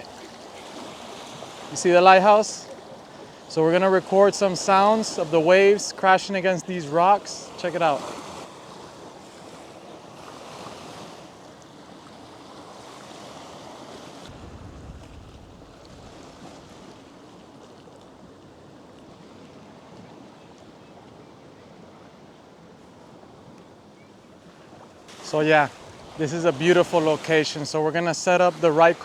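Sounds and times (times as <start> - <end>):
waves on rocky shore: 0.0 - 29.0
low rumble: 14.3 - 16.6.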